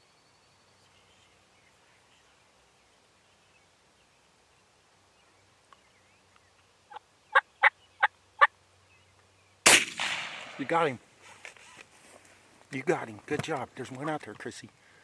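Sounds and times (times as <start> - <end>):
turkey calling: 6.9 - 8.5.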